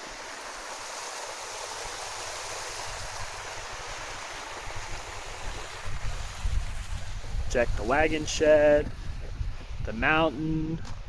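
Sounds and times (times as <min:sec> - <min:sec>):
waterfall rushing: 0:00.0 - 0:08.9
wind rumble on microphone: 0:04.6 - 0:11.0.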